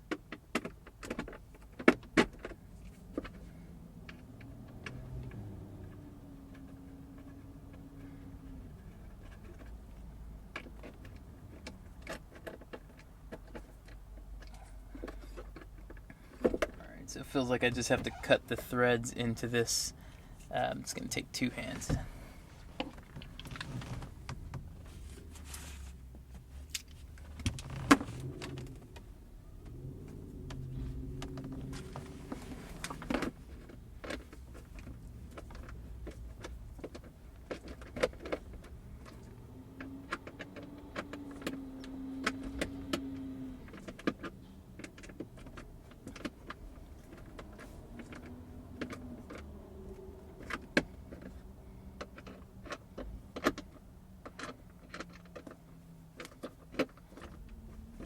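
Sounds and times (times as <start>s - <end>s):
screws creaking in plastic: 23.0s - 24.6s, 27.4s - 28.9s.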